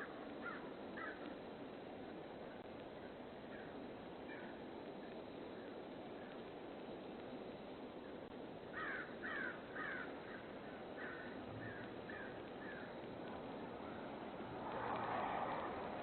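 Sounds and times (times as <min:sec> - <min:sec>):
bird calling: 0:00.0 - 0:01.3, 0:08.8 - 0:14.2
microphone hiss: 0:00.0 - 0:16.0.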